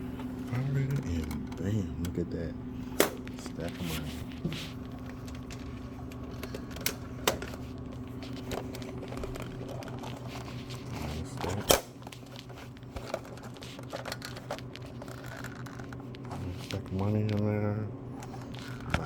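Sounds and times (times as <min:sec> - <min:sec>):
machine electrical hum: 0:00.0 - 0:19.0.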